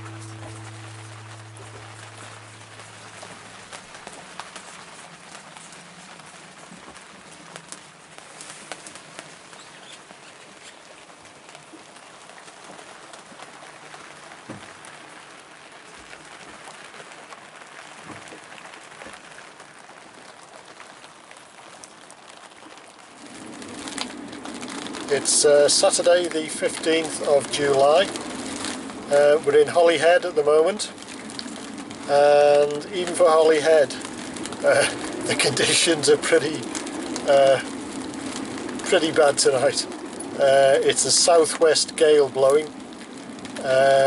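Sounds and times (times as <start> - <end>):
music track: 0.0 - 4.3
rain with sharp drop ticks: 0.0 - 44.0.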